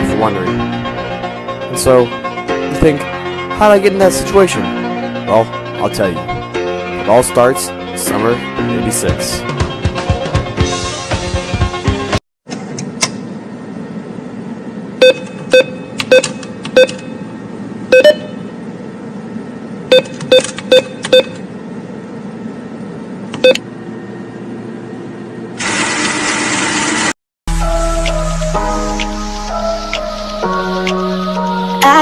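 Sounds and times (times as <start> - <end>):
steady low hum: 12.5 - 25.6
short electronic beeps: 15.0 - 17.2, 17.9 - 18.4, 19.9 - 21.4.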